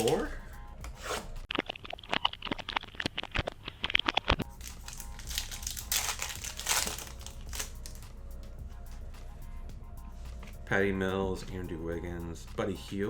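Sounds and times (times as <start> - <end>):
packaging tearing and rustling: 4.4 - 8.1
wrapper crinkling: 4.4 - 8.2.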